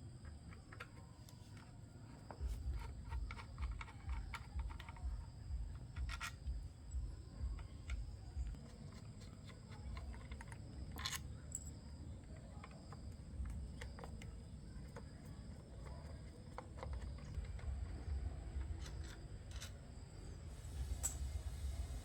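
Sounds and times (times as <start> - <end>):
faint low rumble: 2.3 - 8.8, 16.9 - 22.0
metal parts and tools clicking: 2.3 - 17.8, 18.5 - 21.4.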